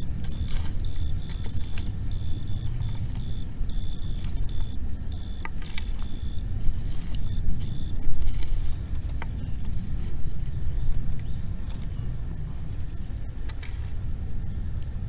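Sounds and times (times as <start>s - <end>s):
burning wood crackles: 0.0s - 15.0s
wind rumbling on microphone: 0.0s - 15.0s.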